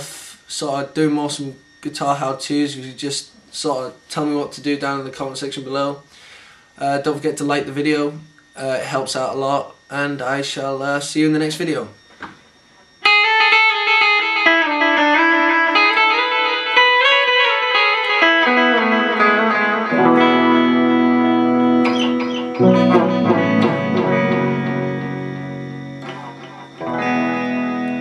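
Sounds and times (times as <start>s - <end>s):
clean electric guitar: 13.0s - 28.0s.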